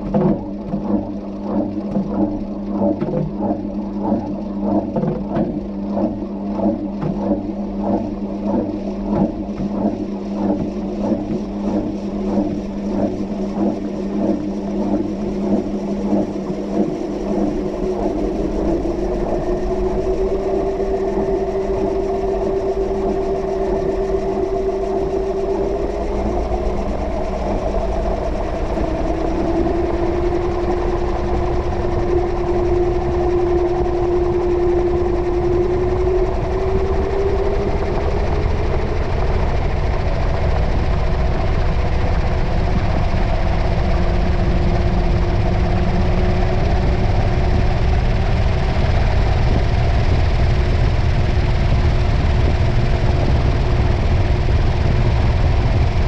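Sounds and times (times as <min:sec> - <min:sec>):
washing machine motor whine: 0:00.0 - 0:56.0.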